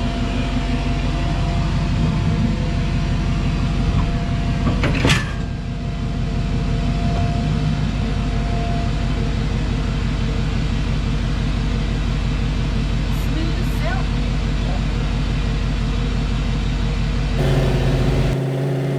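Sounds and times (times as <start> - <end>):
vehicle engine running: 0.0 - 4.7, 17.4 - 18.9.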